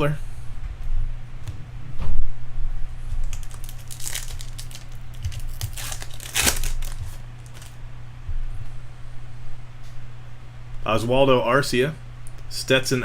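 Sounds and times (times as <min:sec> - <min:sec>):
card pack wrappers crinkling: 0:03.1 - 0:07.8.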